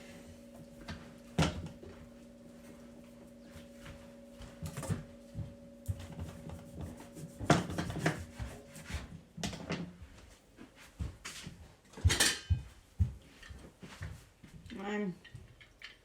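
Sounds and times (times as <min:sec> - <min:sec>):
steady low hum: 0:00.0 - 0:10.6
kitchen items knocking and clicking: 0:12.0 - 0:12.7.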